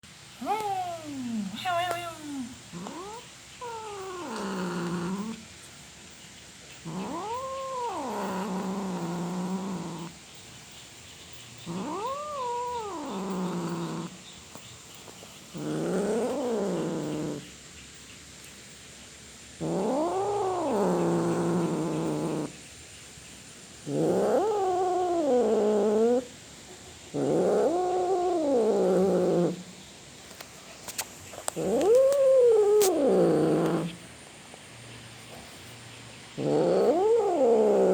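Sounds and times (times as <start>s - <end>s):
cat yowling: 0.4s - 5.4s, 6.9s - 10.1s, 11.6s - 14.2s, 31.6s - 34.0s, 36.4s - 37.9s.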